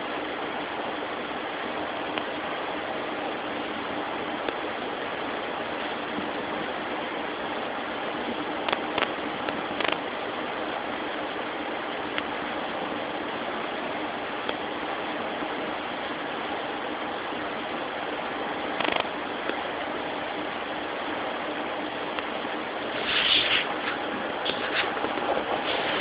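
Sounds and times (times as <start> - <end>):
background hiss: 22.8 - 26.0.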